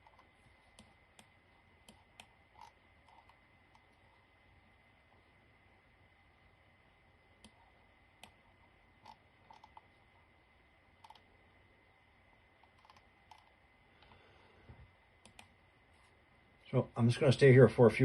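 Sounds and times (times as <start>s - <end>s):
keyboard and mouse clicks: 0.0s - 4.0s, 7.4s - 9.9s, 11.0s - 11.3s, 12.6s - 13.6s, 15.2s - 15.6s
low background hum: 0.0s - 18.0s.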